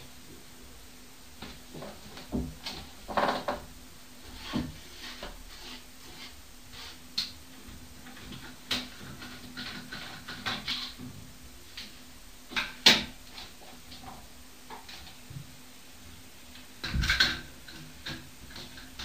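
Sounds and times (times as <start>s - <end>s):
faint steady hum: 0.0s - 19.0s
household clatter: 16.8s - 19.0s.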